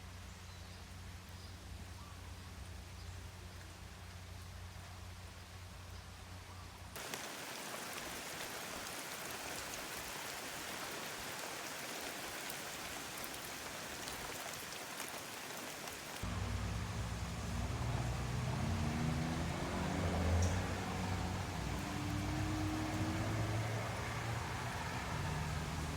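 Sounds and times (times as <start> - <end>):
heavy rain falling: 7.0 - 25.9.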